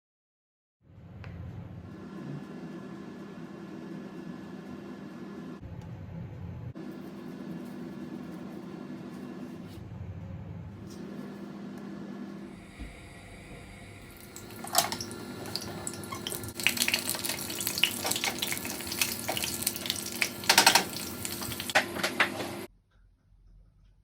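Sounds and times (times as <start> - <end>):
water running from a tap: 13.8 - 22.7.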